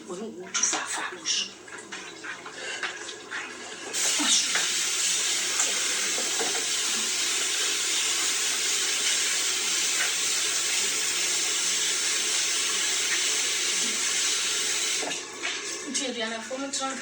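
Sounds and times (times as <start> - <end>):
steady hiss: 4.0 - 15.1.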